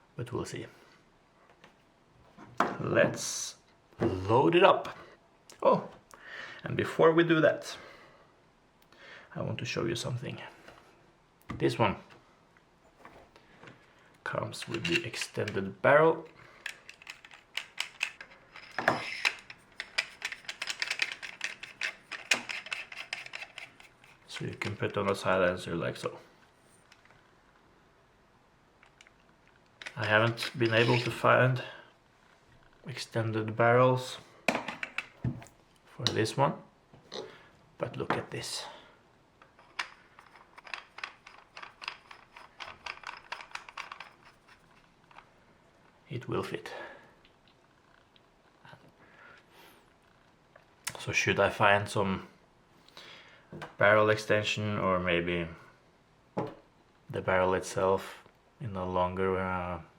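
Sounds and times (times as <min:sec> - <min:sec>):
metal pistol parts clicking: 0:16.6 - 0:24.6, 0:39.4 - 0:45.3.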